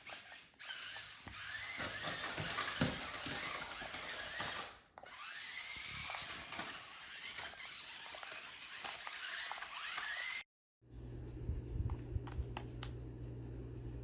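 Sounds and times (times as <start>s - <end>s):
toy car electric motor whining: 0.0s - 10.5s.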